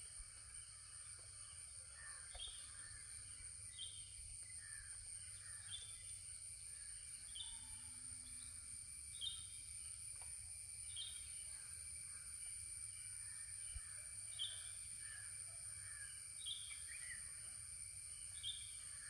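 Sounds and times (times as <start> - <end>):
high insect drone: 0.0 - 19.0.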